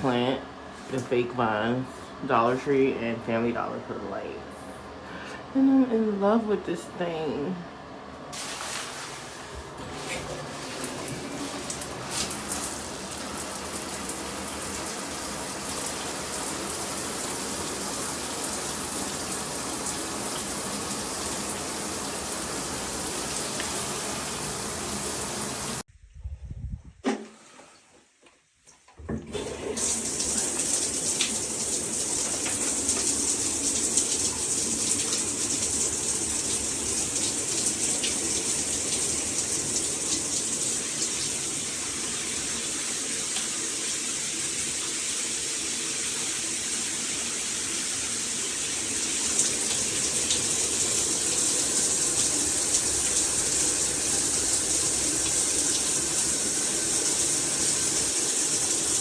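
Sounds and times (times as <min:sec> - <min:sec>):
water spraying from shower head: 0:08.4 - 0:25.8, 0:29.4 - 0:44.2.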